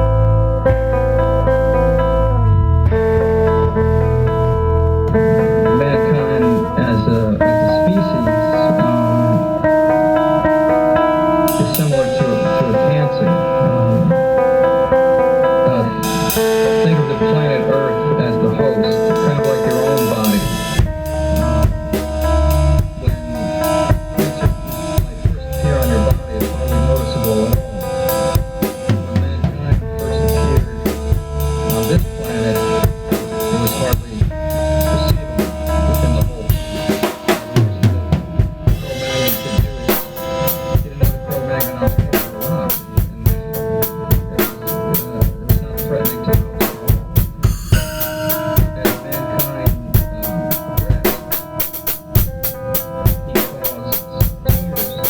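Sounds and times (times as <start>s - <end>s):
held instrument notes: 0.0s - 55.0s
rock drumming on drum kit: 18.9s - 55.0s.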